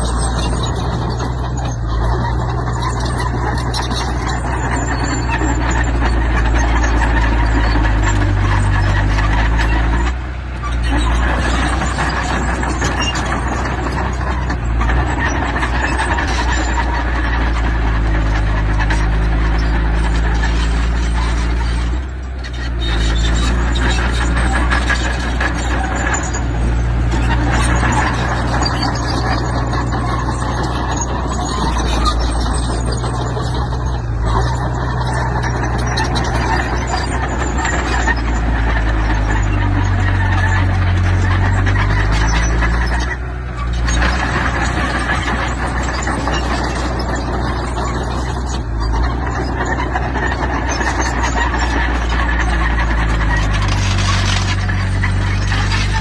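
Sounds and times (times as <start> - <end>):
diesel engines running: 0.0 - 56.0
metallic squealing and clanking: 0.0 - 56.0.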